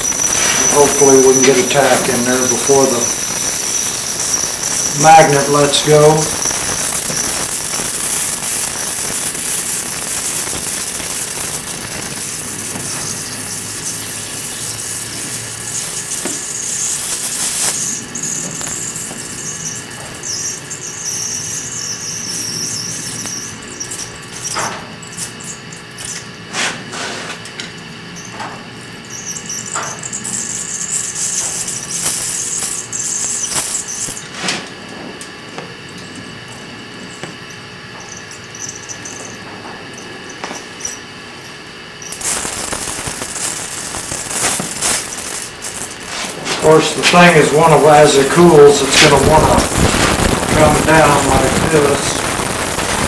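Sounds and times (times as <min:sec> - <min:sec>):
welding arc hissing and buzzing: 0:00.0 - 0:24.7, 0:29.6 - 0:34.4, 0:42.0 - 0:53.0.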